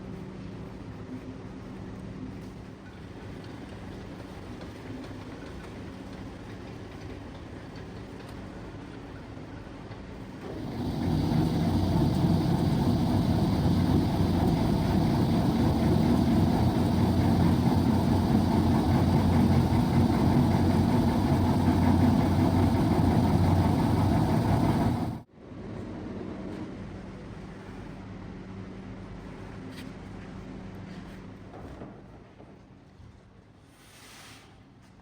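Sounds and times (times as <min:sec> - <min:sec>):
motor humming: 0:10.4 - 0:25.2.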